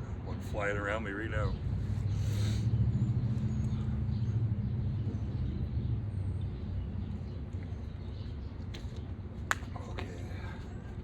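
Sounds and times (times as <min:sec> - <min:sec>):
low engine drone: 0:01.5 - 0:11.0.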